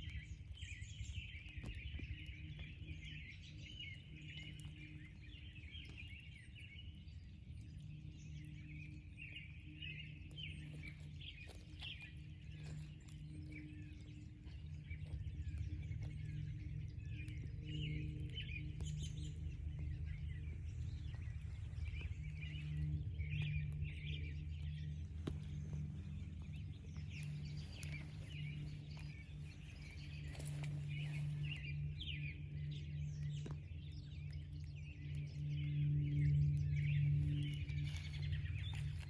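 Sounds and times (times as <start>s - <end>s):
small birds chirping: 0.0s - 39.0s
steady low hum: 0.0s - 39.0s.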